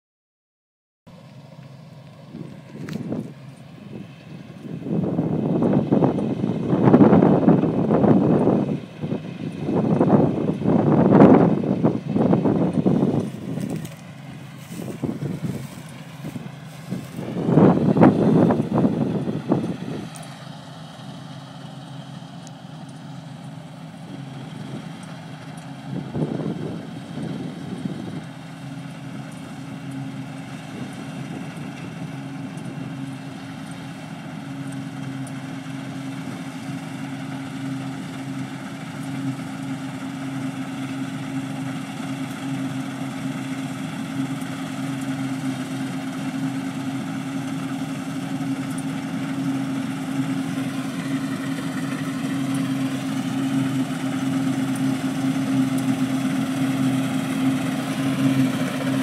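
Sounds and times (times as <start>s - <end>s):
combine harvester engine hum: 1.1s - 59.0s.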